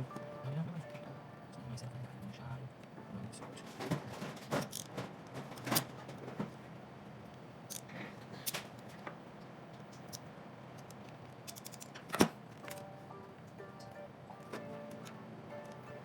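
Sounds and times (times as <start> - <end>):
handling rattle: 3.7 - 6.5.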